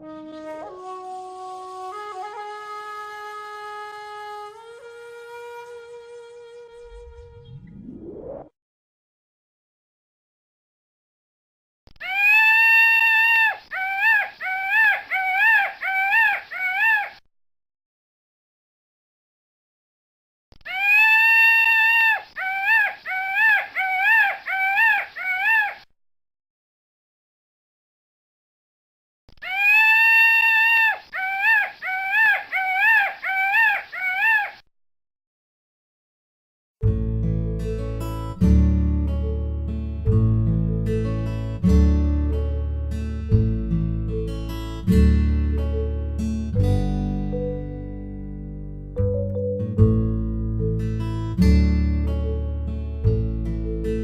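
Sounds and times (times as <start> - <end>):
peacock calling: 12.0 - 17.2, 20.6 - 25.8, 29.4 - 34.6.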